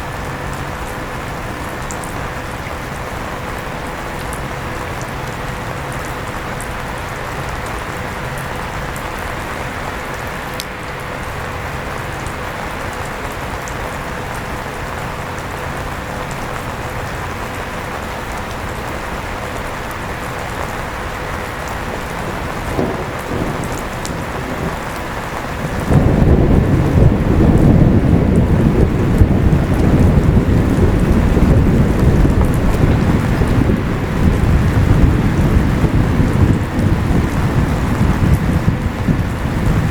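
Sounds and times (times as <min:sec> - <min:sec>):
steady rain: 0:00.0 - 0:39.9
thunder rumble: 0:00.0 - 0:39.9
electric fan hum: 0:19.2 - 0:39.9.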